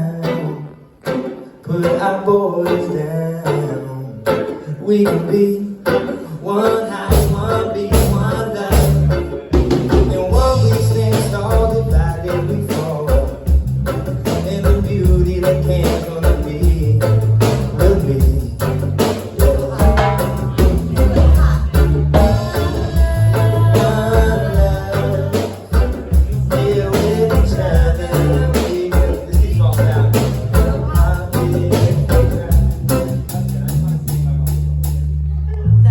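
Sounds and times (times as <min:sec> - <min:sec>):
man singing: 0:00.0 - 0:34.4
live band playing: 0:00.0 - 0:35.3
bass line: 0:07.0 - 0:35.9
steady drum hits: 0:07.1 - 0:33.8.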